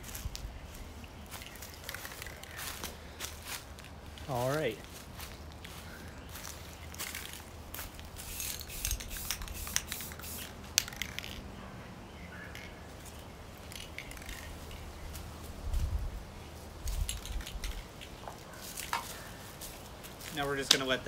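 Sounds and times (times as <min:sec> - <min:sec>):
clicks and handling noises: 0:01.3 - 0:03.0, 0:16.9 - 0:19.2
aerosol spray can hissing: 0:08.2 - 0:11.2.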